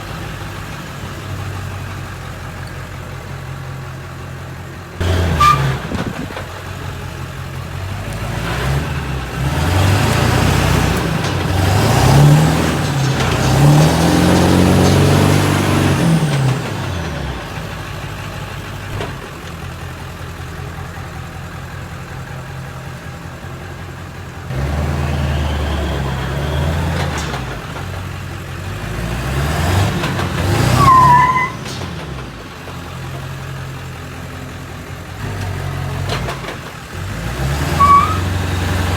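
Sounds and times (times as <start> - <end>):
diesel engine revving hard: 5.0 - 6.7, 7.7 - 18.0, 24.4 - 38.9
short squeal: 5.2 - 6.0, 30.6 - 31.9, 37.7 - 38.4.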